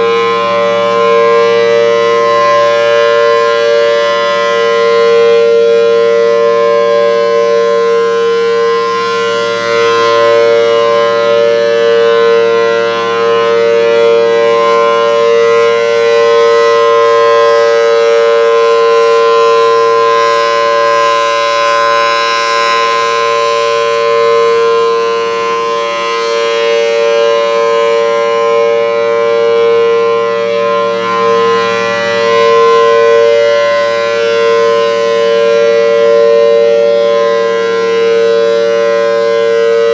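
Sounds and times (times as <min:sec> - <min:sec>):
warning siren steady chord: 0:00.0 - 0:39.9.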